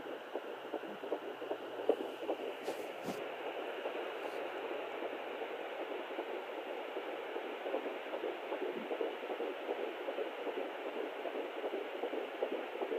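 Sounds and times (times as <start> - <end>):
steady hiss: 0.0 - 10.3
fetal heartbeat pulsing on doppler: 0.0 - 12.9.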